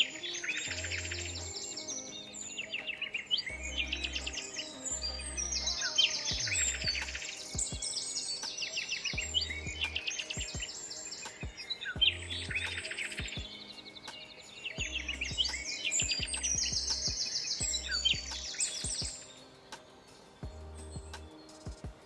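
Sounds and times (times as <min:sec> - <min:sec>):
songbirds chirping trills: 0:00.0 - 0:22.0
background music with bass line: 0:03.5 - 0:08.0, 0:09.2 - 0:10.7, 0:11.4 - 0:13.6, 0:14.8 - 0:19.4, 0:20.4 - 0:22.0.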